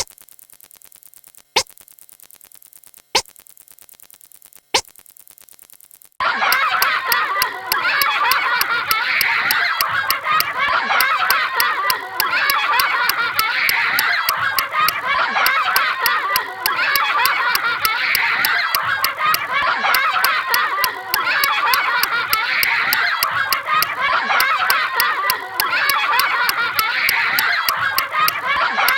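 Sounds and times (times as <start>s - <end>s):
sharp regular clicks: 0.0s - 28.9s.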